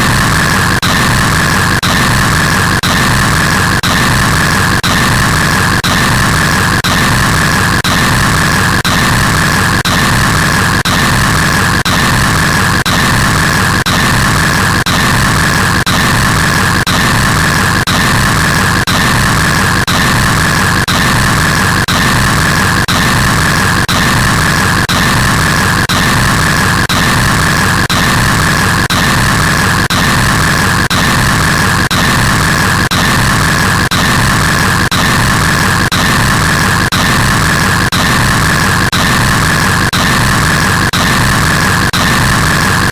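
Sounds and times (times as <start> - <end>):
loud harsh noise: 0.0 - 42.9.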